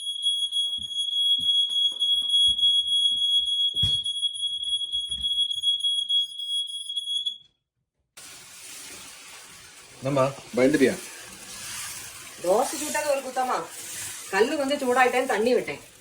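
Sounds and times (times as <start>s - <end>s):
smoke alarm shrill tone: 0.0s - 7.5s.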